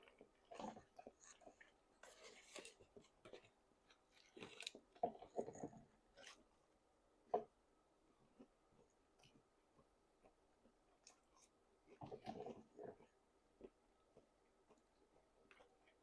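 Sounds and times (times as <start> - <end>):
person chewing food: 0.0 - 6.4.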